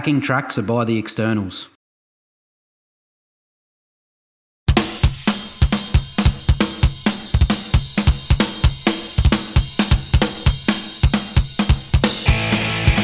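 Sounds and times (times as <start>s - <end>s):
rock drum beat: 4.7s - 13.0s.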